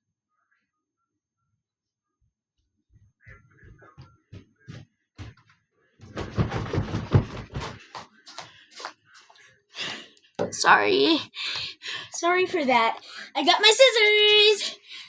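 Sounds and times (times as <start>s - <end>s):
knocks and thumps of handling: 6.0s - 7.8s.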